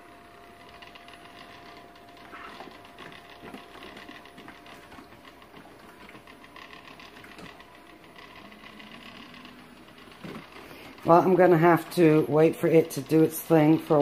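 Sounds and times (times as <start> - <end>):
robot vacuum motor whir: 6.3 - 14.0.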